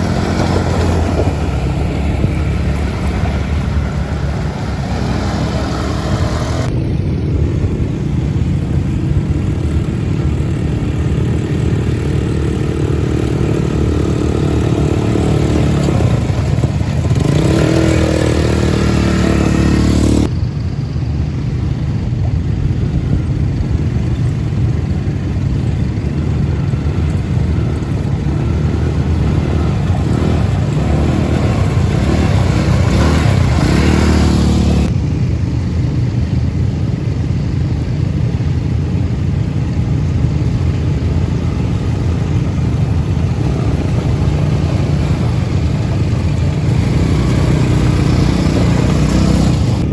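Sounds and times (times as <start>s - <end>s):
vehicle engine rumbling: 0.0s - 49.9s.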